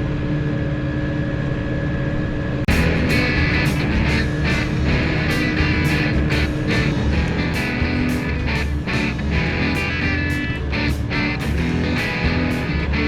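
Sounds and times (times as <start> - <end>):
rock music with guitar: 2.7 - 13.0
tractor engine running: 2.7 - 13.0.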